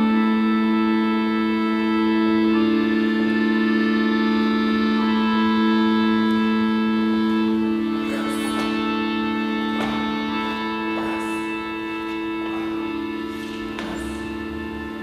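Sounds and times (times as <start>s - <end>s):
organ-like keyboard chords: 0.0s - 15.0s.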